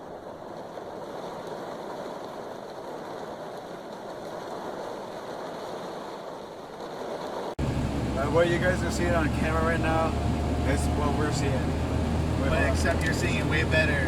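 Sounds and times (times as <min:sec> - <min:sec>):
car road noise on wet road: 0:07.6 - 0:14.0.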